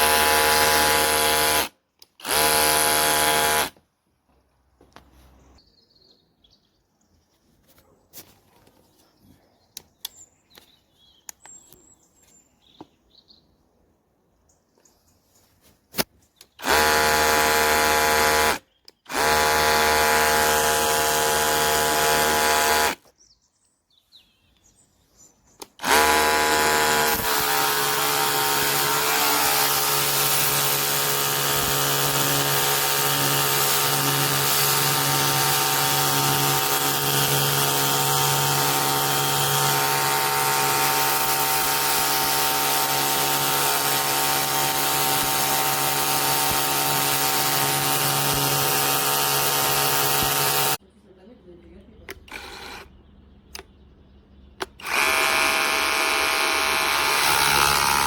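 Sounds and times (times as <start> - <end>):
pressure washer motor humming: 16.6 - 23.0, 25.6 - 50.8, 54.8 - 58.0.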